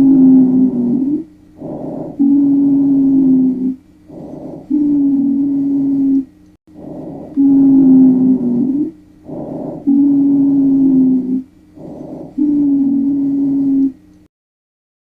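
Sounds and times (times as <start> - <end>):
wheezing breath: 11.8 - 12.4.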